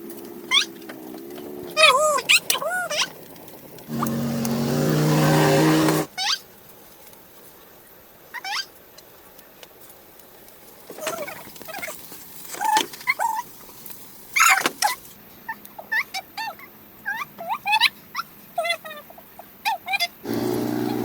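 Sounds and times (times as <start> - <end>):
vehicle engine running: 3.8 - 6.1
faint high squeaks: 10.9 - 13.5.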